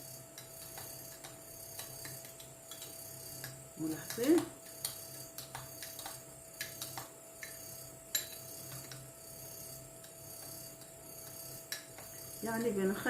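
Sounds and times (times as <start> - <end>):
spoon clinking against glass: 7.4 - 9.0.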